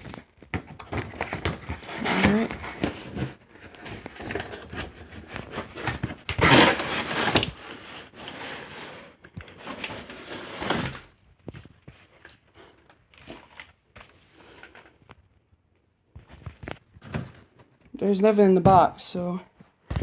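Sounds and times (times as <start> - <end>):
cardboard box scraping and rustling: 0.7 - 11.2, 17.0 - 17.7.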